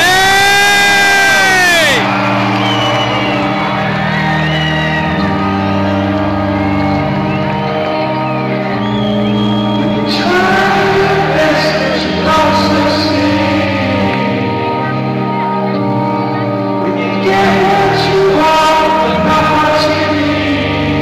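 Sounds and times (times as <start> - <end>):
audience shouts and whoops: 0.0 - 10.8
slow held keyboard chords: 0.0 - 21.0.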